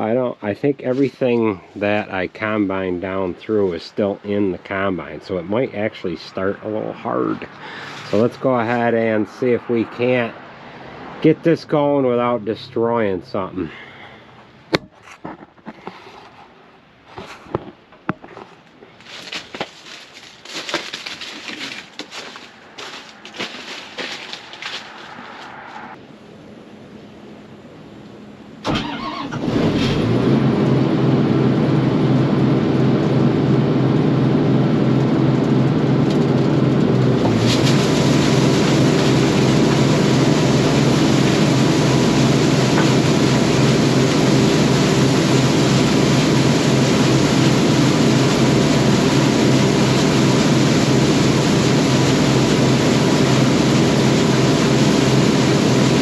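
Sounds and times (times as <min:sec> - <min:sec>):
combine harvester engine running: 0:00.0 - 0:10.3, 0:19.0 - 0:26.0, 0:28.6 - 0:56.0.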